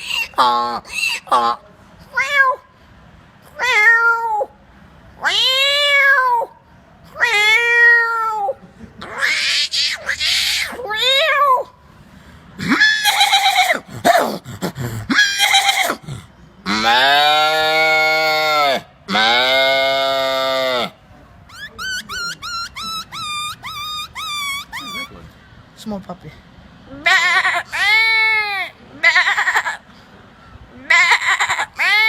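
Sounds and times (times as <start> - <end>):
man imitating animal calls: 0.0 - 1.6, 7.2 - 11.7, 12.6 - 25.3, 30.8 - 32.0.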